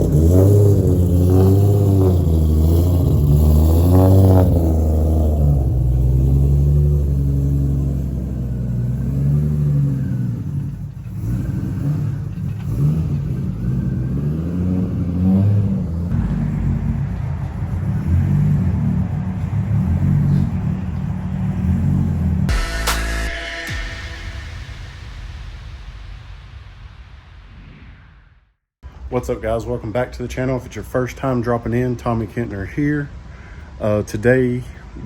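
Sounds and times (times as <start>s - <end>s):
car engine revving: 0.0s - 25.8s.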